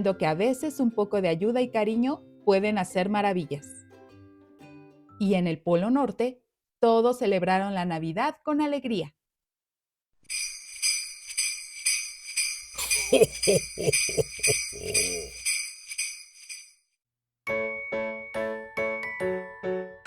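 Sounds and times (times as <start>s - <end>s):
person calling out syllables: 12.8s - 15.4s.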